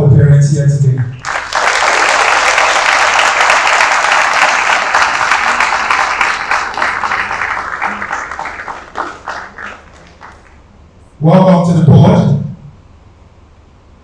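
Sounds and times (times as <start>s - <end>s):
audience applauding: 1.2s - 10.7s.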